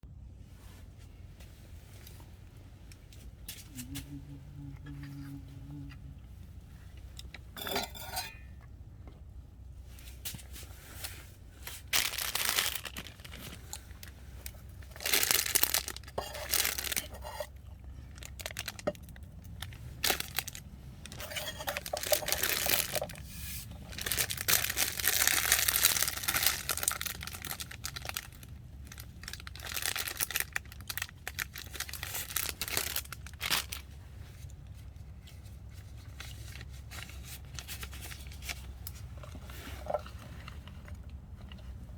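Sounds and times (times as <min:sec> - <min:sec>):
faint low hum: 0:00.0 - 0:41.9
crinkly material rustling: 0:09.8 - 0:41.9.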